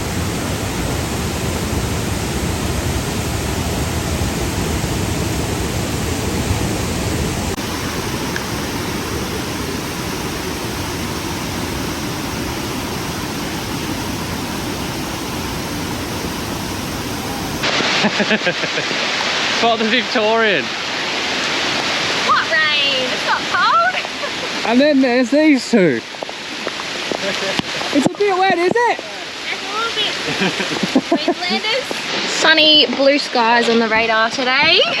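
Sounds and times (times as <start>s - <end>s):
waterfall rushing water: 0.0s - 35.0s.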